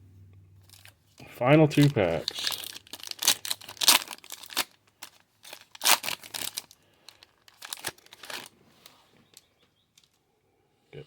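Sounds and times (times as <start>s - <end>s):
plastic wrapper tearing and crinkling: 0.6s - 1.0s, 1.6s - 8.6s.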